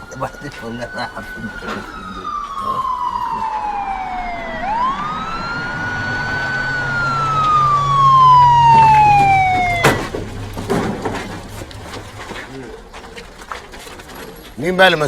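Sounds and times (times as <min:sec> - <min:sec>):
police siren wailing: 0:00.0 - 0:11.5.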